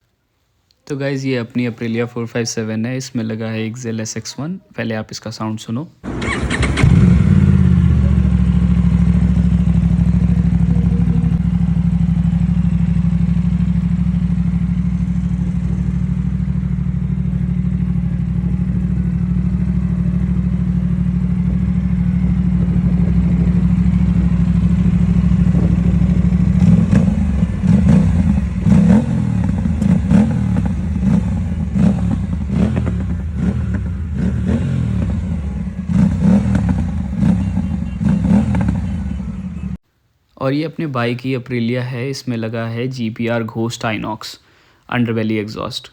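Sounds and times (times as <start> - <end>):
motorcycle engine idling and revving: 6.1 - 39.8.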